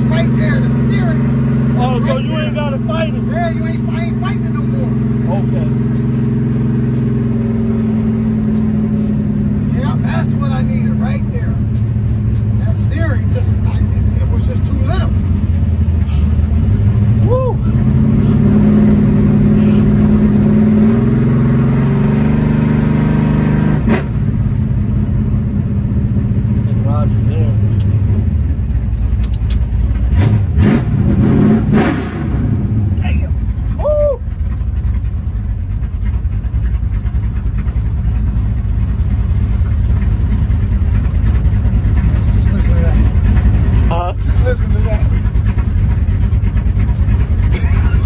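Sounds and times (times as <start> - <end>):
car engine running: 0.0 - 48.0
road noise: 0.0 - 48.0
sharp click: 8.5 - 8.8, 18.8 - 19.0, 27.8 - 28.0, 29.2 - 29.7.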